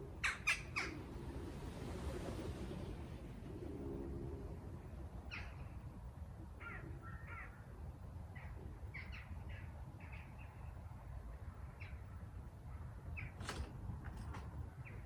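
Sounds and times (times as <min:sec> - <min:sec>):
steady low rumble: 0:00.0 - 0:15.0
harsh caw-like bird calls: 0:06.6 - 0:07.6.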